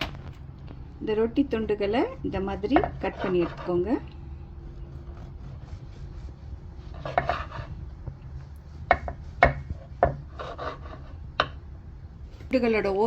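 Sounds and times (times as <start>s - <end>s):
blade tapping cutting board: 2.7s - 3.6s, 8.9s - 10.8s
knife sawing through bread: 3.0s - 4.0s, 4.6s - 7.8s, 9.1s - 11.2s.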